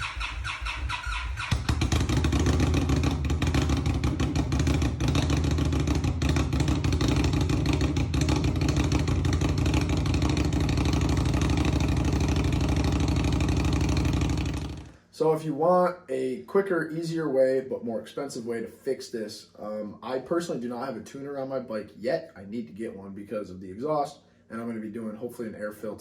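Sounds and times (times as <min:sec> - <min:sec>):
starter cranking: 0:00.0 - 0:03.9
motorcycle engine running: 0:00.0 - 0:15.0.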